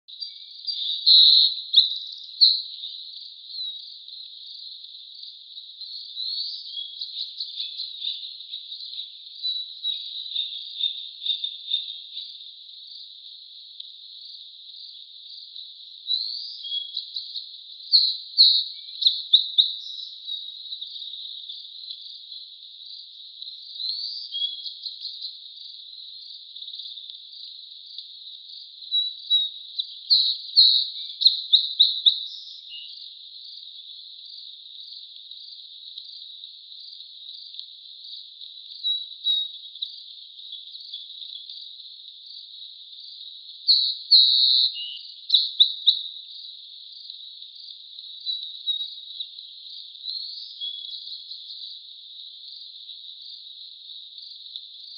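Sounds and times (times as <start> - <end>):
insects chirping: 0.2 - 54.9.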